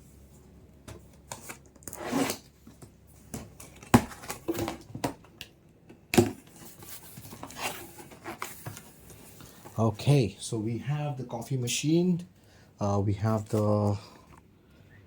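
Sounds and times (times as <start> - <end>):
packaging rustling and crinkling: 6.3 - 9.8.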